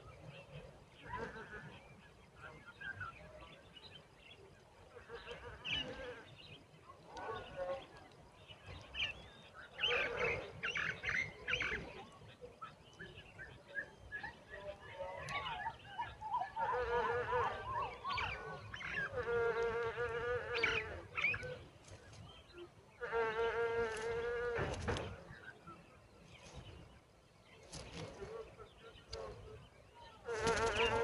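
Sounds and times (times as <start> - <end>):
nestlings begging chirps: 30.2 - 31.0.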